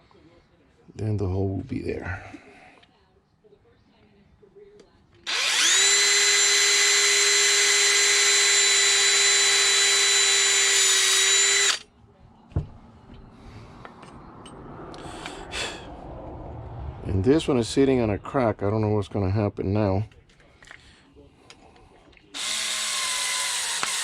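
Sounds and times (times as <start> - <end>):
electric drill running: 5.3 - 11.8, 22.4 - 24.0.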